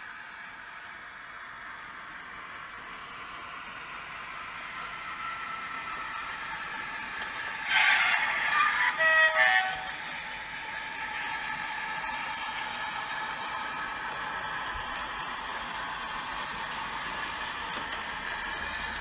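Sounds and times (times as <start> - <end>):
model railway running: 0.0 - 19.0
two-note train horn: 8.0 - 10.0.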